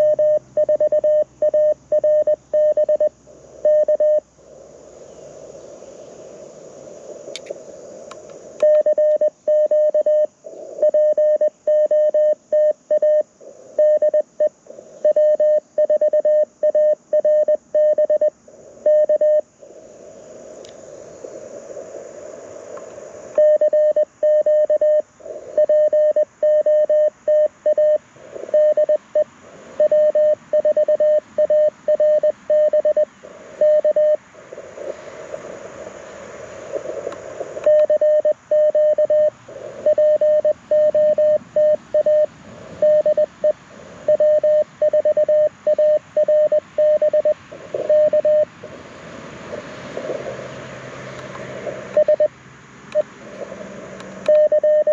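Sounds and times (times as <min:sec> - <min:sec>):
morse code tone: 0:00.0 - 0:04.2, 0:25.6 - 0:34.2, 0:37.6 - 0:48.5, 0:52.0 - 0:52.3, 0:54.3 - 0:54.9
receiver hiss: 0:00.0 - 0:54.9.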